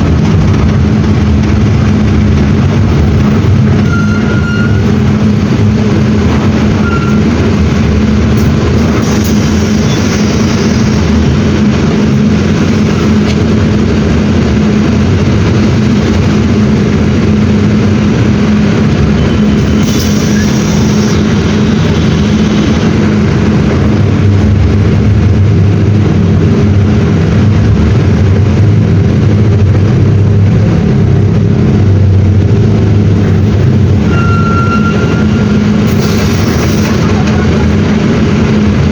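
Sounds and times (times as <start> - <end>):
bus diesel engine running: 0.0 - 38.9
deep hum: 0.0 - 38.9
short air hisses: 19.8 - 21.3.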